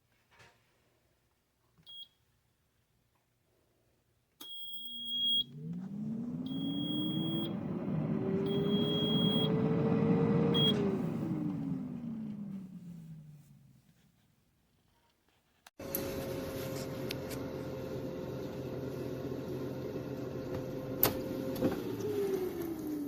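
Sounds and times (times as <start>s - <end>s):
air fryer beeps: 4.4s - 5.6s, 6.4s - 7.6s, 8.4s - 10.9s
fan motor whining: 5.2s - 13.8s, 15.8s - 23.0s.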